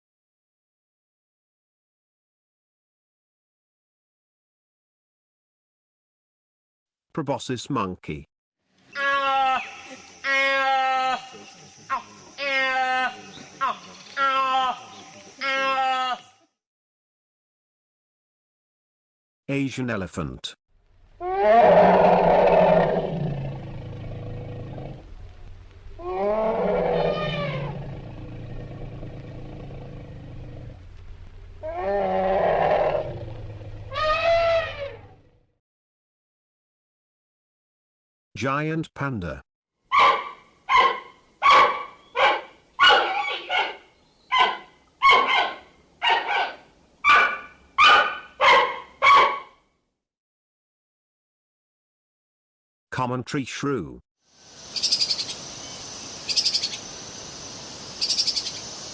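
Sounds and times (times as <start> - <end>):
elephant low rumble: 20.8 - 35.4
elephant loud pitched call: 21.2 - 25.0, 26.0 - 30.7, 31.6 - 35.2
panda bark-like calls: 26.0 - 27.7, 33.9 - 35.0, 39.9 - 49.5.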